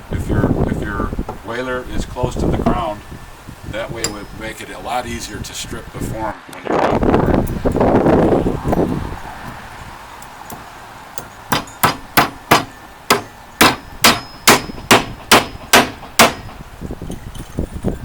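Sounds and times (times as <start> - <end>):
hammer striking metal: 4.0 - 4.6, 11.2 - 16.6.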